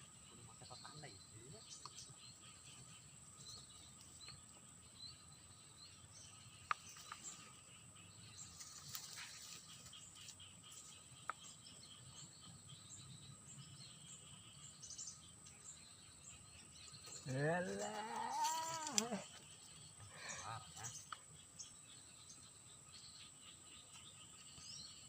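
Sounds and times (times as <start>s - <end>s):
bird chirps: 0.0s - 25.0s
high-pitched insect drone: 17.2s - 19.4s.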